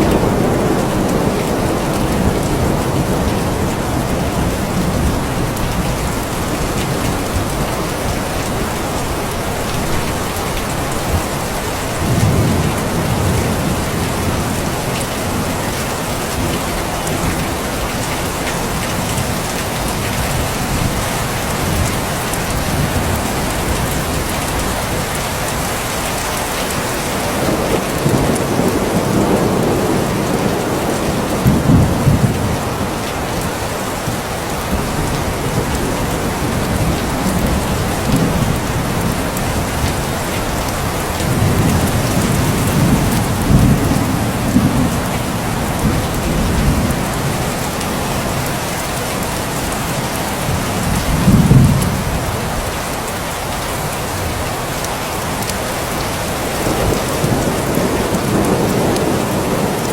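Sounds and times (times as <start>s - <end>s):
rolling thunder: 0.0s - 25.2s, 27.3s - 48.5s, 49.3s - 52.7s, 56.4s - 59.9s
steady rain falling: 0.0s - 59.9s.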